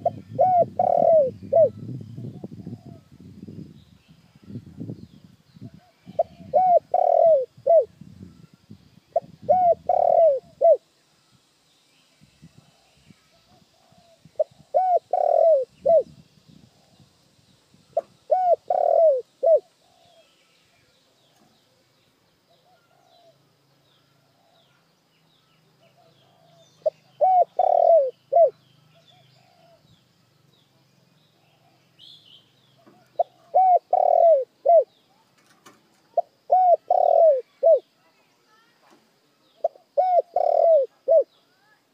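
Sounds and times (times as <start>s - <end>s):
dove cooing: 0.0s - 3.1s, 5.7s - 7.9s, 9.2s - 10.8s, 13.7s - 16.2s, 18.0s - 20.3s, 26.0s - 29.8s, 32.8s - 34.9s, 36.1s - 37.9s, 39.6s - 41.4s
small birds chirping: 0.0s - 41.9s.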